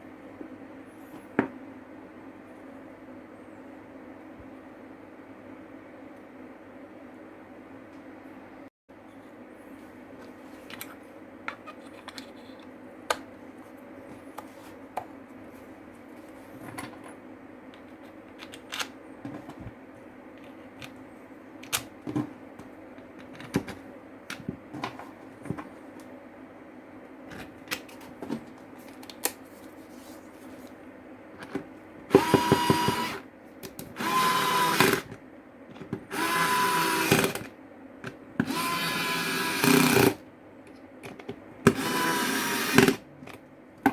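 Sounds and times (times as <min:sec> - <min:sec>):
clicks and knocks of parts handled: 0:10.2 - 0:13.3, 0:17.8 - 0:19.7, 0:21.6 - 0:26.1
power drill running: 0:32.1 - 0:33.2, 0:34.0 - 0:35.1, 0:36.1 - 0:37.4, 0:38.4 - 0:40.2, 0:41.7 - 0:43.0.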